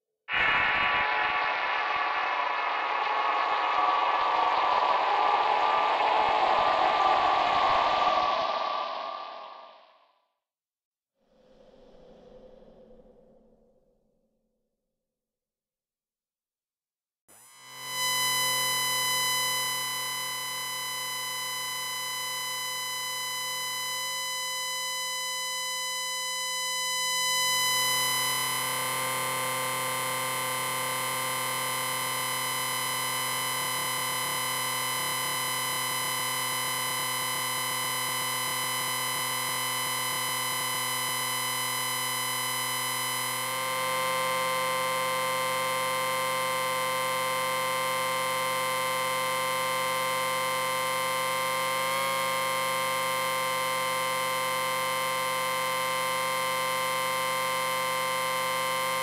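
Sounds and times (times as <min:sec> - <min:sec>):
electronic sci-fi drone: 0:00.3 - 0:09.9, 0:27.0 - 0:59.0.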